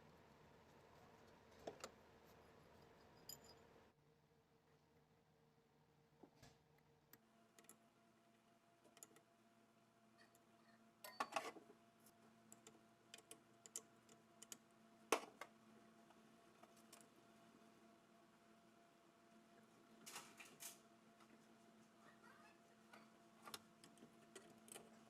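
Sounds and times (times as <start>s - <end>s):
faint steady hum: 0.0s - 25.0s.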